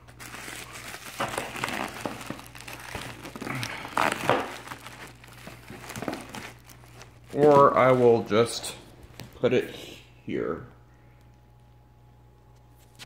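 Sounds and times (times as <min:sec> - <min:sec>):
packaging rustling and crinkling: 0:00.0 - 0:09.4.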